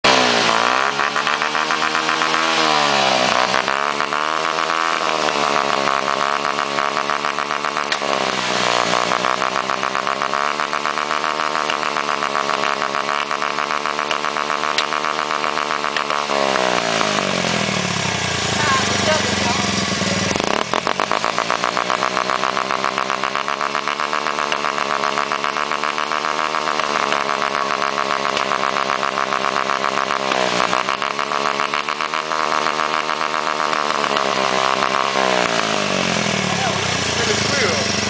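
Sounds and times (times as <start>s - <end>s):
exhaust pops: 0.0s - 38.0s
motorcycle engine hitting rev limiter: 0.0s - 38.0s.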